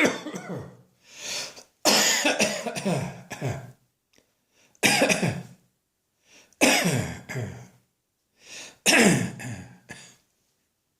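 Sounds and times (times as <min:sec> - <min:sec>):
person dry coughing: 0:00.0 - 0:00.8, 0:01.5 - 0:03.8, 0:04.8 - 0:05.6, 0:06.6 - 0:07.7, 0:08.8 - 0:10.2.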